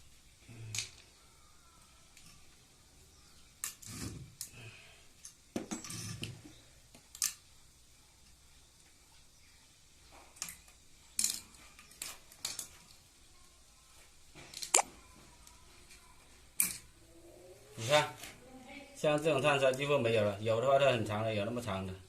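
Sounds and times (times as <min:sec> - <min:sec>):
small hard parts and tools clinking: 0:05.2 - 0:06.4, 0:10.3 - 0:13.0.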